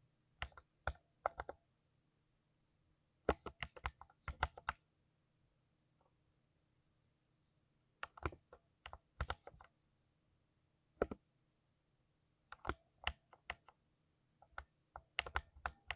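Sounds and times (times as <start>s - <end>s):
keyboard typing: 0.4s - 1.6s, 3.3s - 4.8s, 8.0s - 9.7s, 12.5s - 13.8s, 14.4s - 15.9s.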